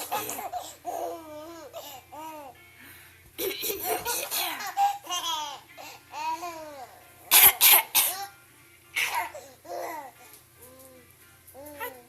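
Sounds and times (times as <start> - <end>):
person coughing: 0.0 - 0.8, 3.4 - 4.9, 7.3 - 8.2
baby laughing: 0.0 - 2.6, 3.4 - 7.0, 9.0 - 10.2, 11.6 - 12.0.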